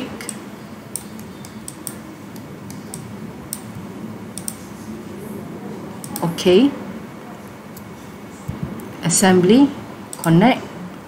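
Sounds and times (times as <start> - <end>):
computer mouse clicking: 0.2 - 3.8, 4.4 - 4.6, 6.0 - 6.3.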